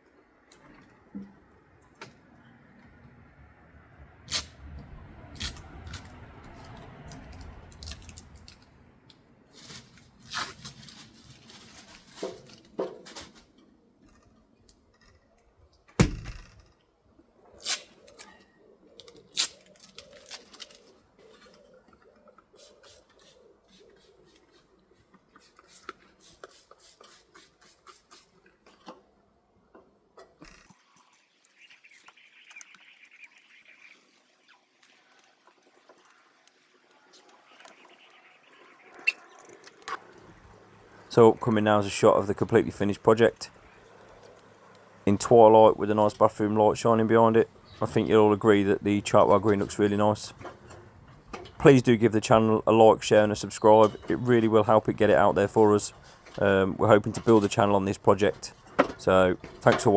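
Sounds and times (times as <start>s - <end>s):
clicks knocks and scrapes of handling: 9.5s - 15.3s
heavy thump: 16.0s - 16.6s.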